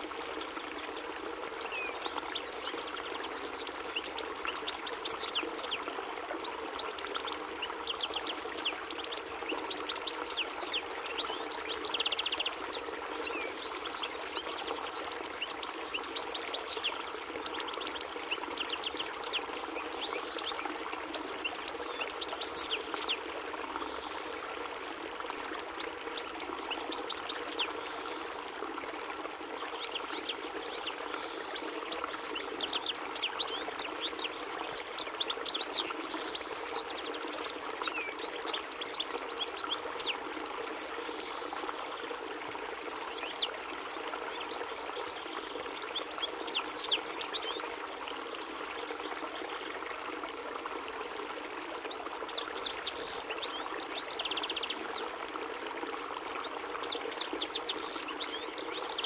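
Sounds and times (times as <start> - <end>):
goldfinch twittering: 32.2 - 40.2, 45.7 - 47.6.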